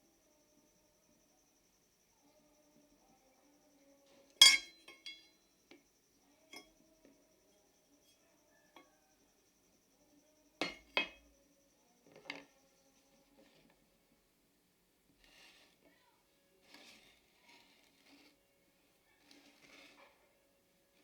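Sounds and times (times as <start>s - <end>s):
metal tools clinking on work surface: 4.4s - 5.4s.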